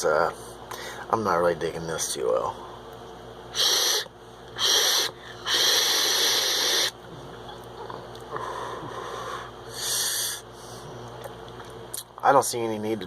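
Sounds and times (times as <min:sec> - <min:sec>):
person exhaling vapour: 0:03.5 - 0:07.0, 0:08.3 - 0:10.5
vape airflow hissing: 0:03.5 - 0:07.0.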